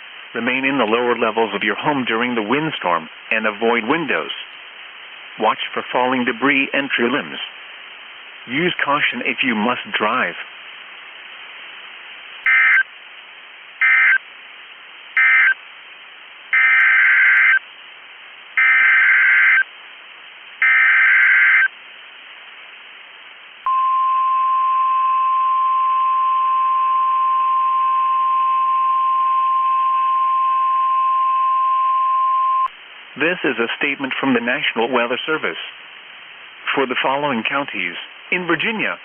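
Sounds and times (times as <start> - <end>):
faint hiss: 0.0 - 16.6, 32.7 - 39.0
screechy digital data bursts: 12.5 - 12.8, 13.8 - 14.2, 15.2 - 15.6, 16.6 - 17.6, 18.6 - 19.6, 20.6 - 21.7
steady warning alarm tone: 12.5 - 12.8, 13.8 - 14.2, 15.2 - 15.6, 16.6 - 17.6, 18.6 - 19.6, 20.6 - 21.7, 23.7 - 32.7.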